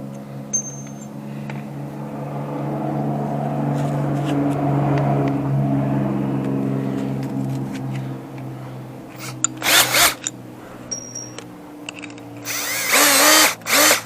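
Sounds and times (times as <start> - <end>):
power drill running: 9.2 - 10.3, 12.4 - 14.0.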